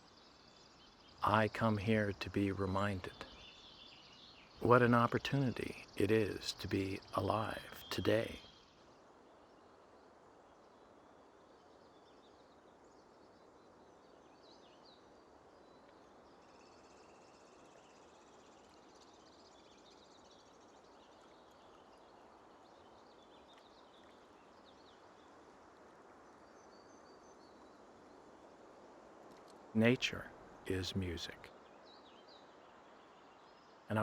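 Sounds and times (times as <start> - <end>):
soft forest hush: 0.5 - 8.6, 20.5 - 34.0.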